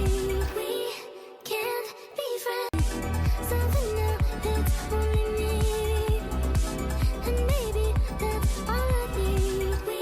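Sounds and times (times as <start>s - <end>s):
electronic dance music: 2.8s - 10.0s.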